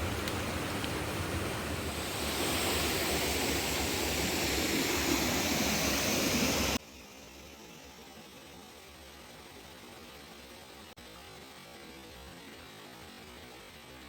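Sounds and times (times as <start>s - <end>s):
stream water rushing: 0.0s - 6.8s.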